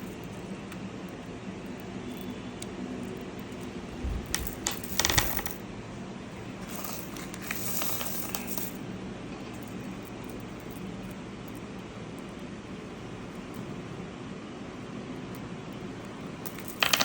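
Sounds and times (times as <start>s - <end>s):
gemstones clinking: 16.5s - 17.0s.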